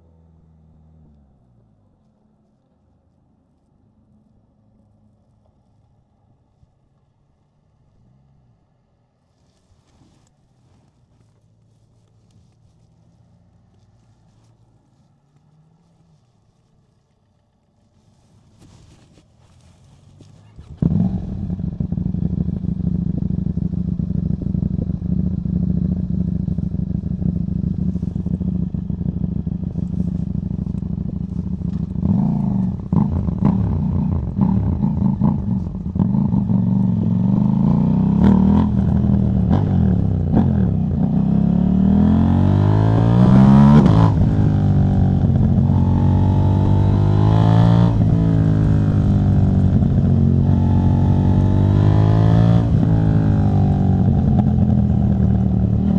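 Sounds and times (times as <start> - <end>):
motorcycle engine revving: 18.6 - 55.9
exhaust pops and clicks: 29.2 - 34.4.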